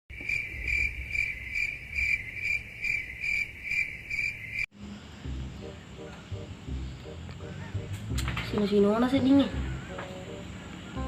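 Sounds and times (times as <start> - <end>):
crickets chirping: 0.1 - 8.0
low hum with pitched pulses: 4.8 - 9.9.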